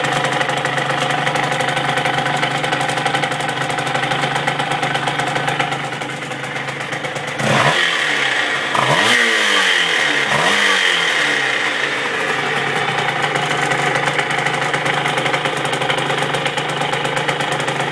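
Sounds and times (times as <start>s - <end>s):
two-stroke engine idling and revving: 0.0s - 17.9s
resonating engine drone: 5.6s - 17.9s
rattle slapping: 10.4s - 17.9s.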